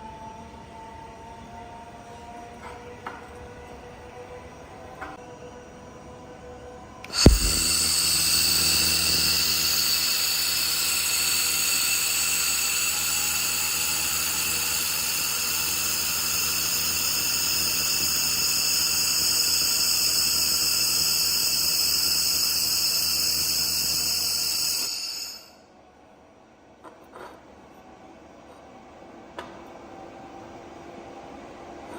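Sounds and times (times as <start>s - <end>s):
laser welder high-pitched whine: 7.1s - 25.6s.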